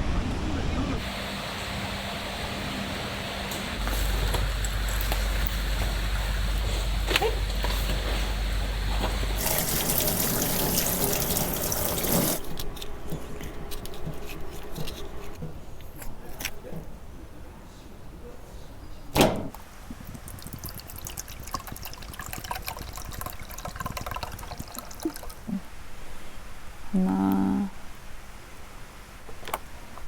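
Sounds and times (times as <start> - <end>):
stream water rushing: 9.4 - 12.4
sharp knock: 19.2 - 19.6.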